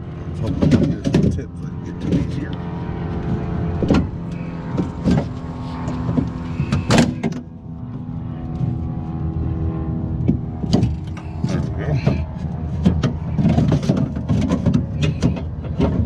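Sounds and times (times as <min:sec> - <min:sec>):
steady engine-like hum: 0:00.0 - 0:16.0.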